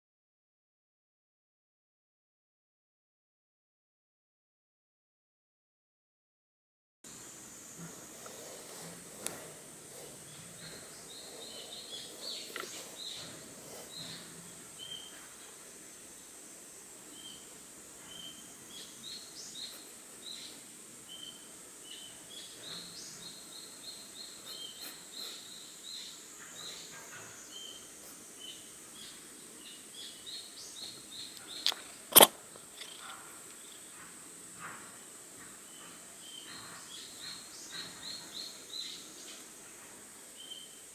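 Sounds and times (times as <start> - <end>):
birds chirping: 7.7 - 40.9
cat sneezing: 32.1 - 32.4.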